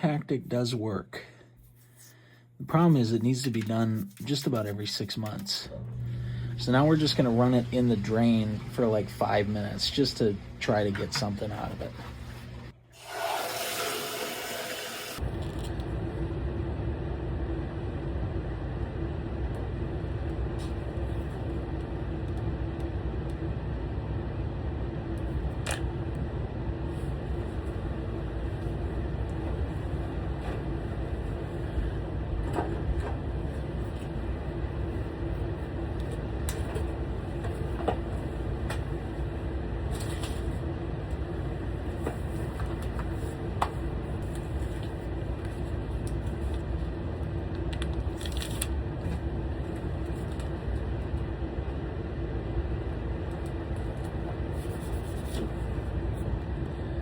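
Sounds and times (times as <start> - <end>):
water rushing through hose: 13.0 - 15.2.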